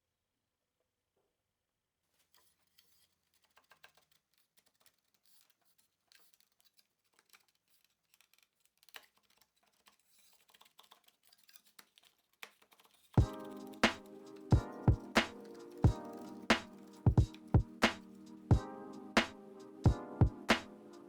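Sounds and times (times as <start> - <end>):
light clicks and scratches: 2.1 - 18.5
music with drum hits: 13.2 - 20.7.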